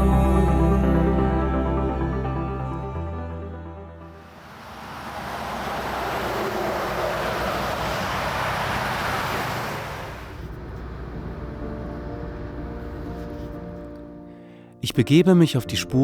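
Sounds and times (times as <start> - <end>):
soft music: 0.0 - 4.4, 11.2 - 16.0
vehicle passing by: 4.1 - 13.7.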